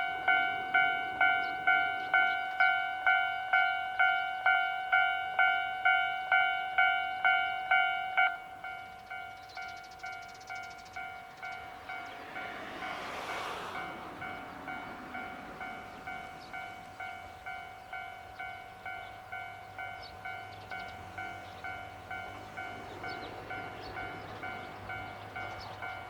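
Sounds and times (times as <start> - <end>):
level crossing alarm bell: 0.0 - 13.3, 14.2 - 26.0
train rumble: 8.5 - 26.0.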